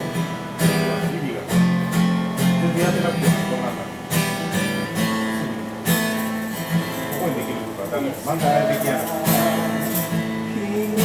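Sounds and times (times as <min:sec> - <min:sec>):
acoustic guitar strumming: 0:00.0 - 0:11.0.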